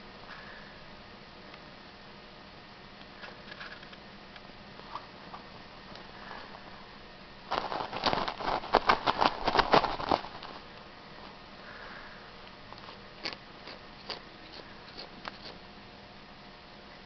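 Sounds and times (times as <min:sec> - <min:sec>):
cat crunching: 0:07.5 - 0:10.7, 0:12.8 - 0:15.6.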